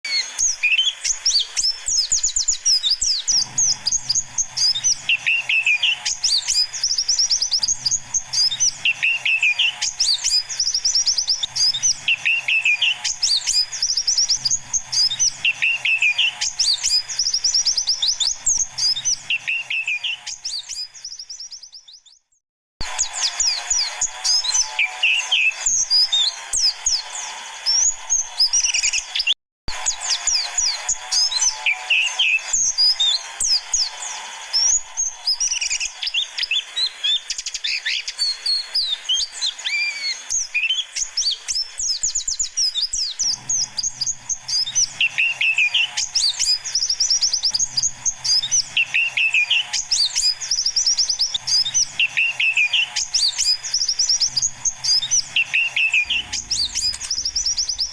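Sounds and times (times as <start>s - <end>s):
birds chirping and twittering: 0.1s - 57.9s.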